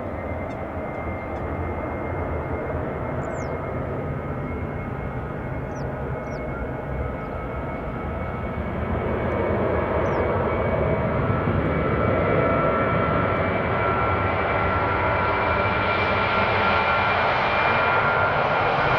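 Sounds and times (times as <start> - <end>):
jet engines roaring: 0.0 - 18.9.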